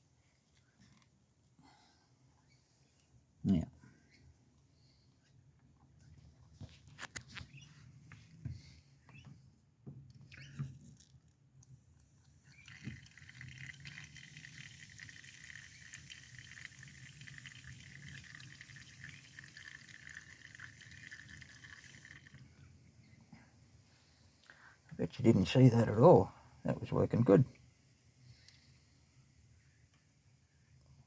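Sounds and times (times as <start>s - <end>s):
liquid hiss through tube: 11.7s - 22.4s.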